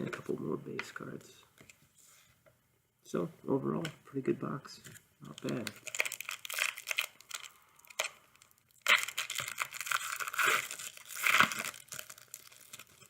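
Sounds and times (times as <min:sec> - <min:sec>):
foil wrapper crinkling and tearing: 0:05.3 - 0:13.0.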